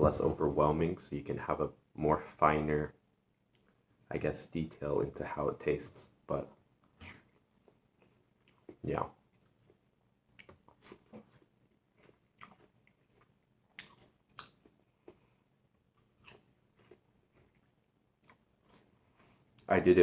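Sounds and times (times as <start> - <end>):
chewing watermelon: 7.0 - 19.7.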